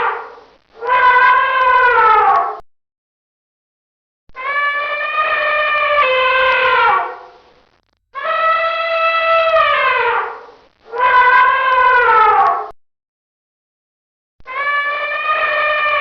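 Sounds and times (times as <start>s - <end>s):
elephant trumpeting: 0.0s - 2.4s, 4.4s - 7.4s, 8.2s - 12.7s, 14.6s - 16.0s.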